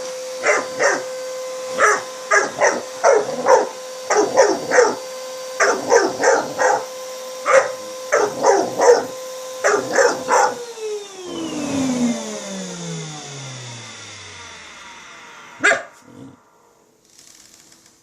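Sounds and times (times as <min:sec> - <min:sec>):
vacuum cleaner humming: 0:00.0 - 0:17.4
vacuum motor winding down: 0:00.0 - 0:17.6
puppy barking: 0:00.4 - 0:01.1, 0:01.7 - 0:10.6, 0:15.6 - 0:16.1.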